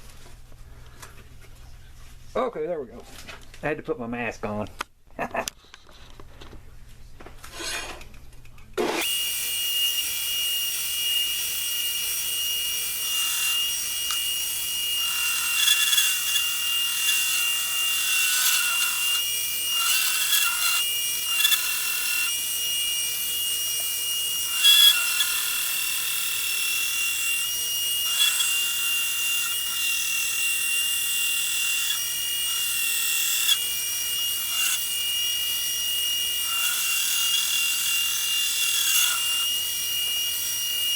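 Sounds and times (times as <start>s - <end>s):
metal blade grinding rasp: 9.0s - 40.9s
power sander whining: 9.0s - 40.9s.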